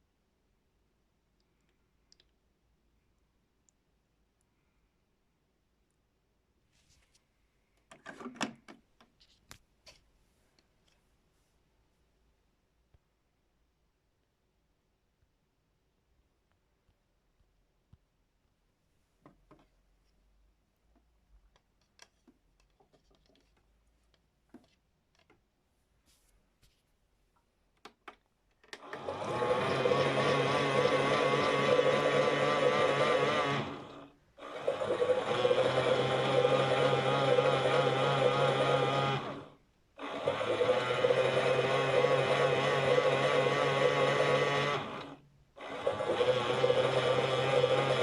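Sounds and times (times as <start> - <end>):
toy washing machine motor whine: 28.8 - 48.0.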